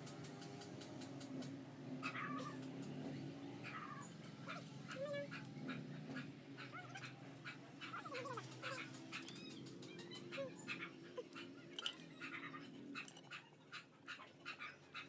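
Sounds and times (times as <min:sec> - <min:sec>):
dog whimpering: 0:06.6 - 0:11.5.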